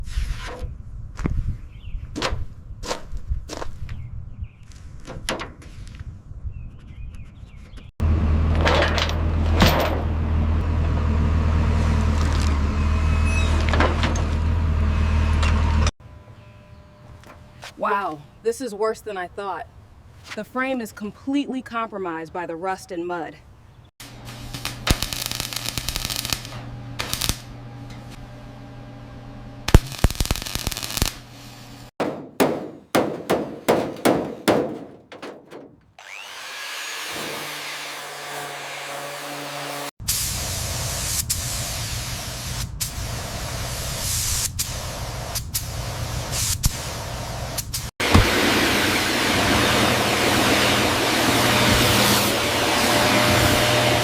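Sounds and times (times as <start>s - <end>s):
sharp strikes: 32.0s - 35.8s
power tools cutting: 36.0s - 39.9s.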